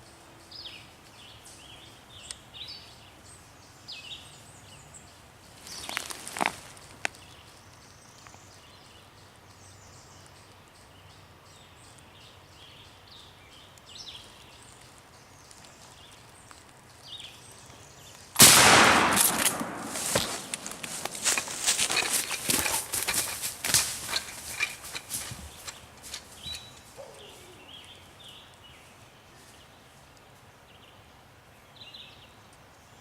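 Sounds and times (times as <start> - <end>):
songbird chirps: 0.0 - 18.6, 19.3 - 33.0
shotgun blast: 18.4 - 20.8
brief rustle: 18.4 - 27.4.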